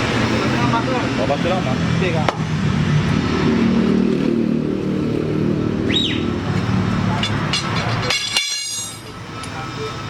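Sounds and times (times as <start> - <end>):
diesel truck engine running: 0.0 - 8.4.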